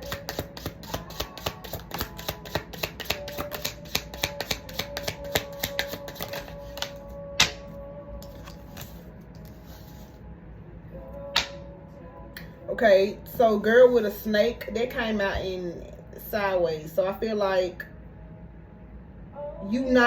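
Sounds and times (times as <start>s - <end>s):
cards being shuffled: 0.0s - 7.6s, 8.2s - 10.2s
soft background music: 0.0s - 20.0s.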